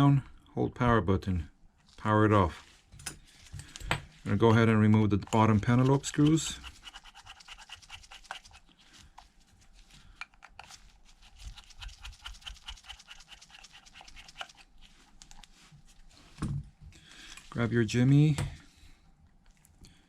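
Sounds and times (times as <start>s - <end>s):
screwdriver clicking and scratching: 3.7s - 8.7s, 10.2s - 15.5s.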